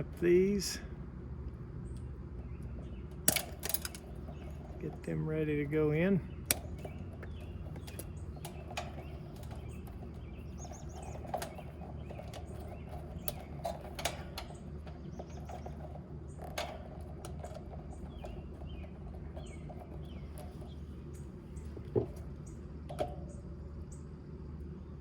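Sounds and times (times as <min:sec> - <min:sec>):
birds chirping: 0:00.0 - 0:25.0
steady low hum: 0:00.0 - 0:25.0
wire being cut and handled: 0:03.1 - 0:20.9.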